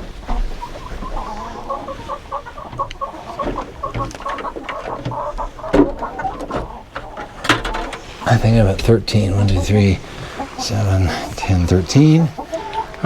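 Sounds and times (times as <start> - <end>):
hens clucking: 0.0 - 13.0
small knocks and clicks: 2.7 - 8.2.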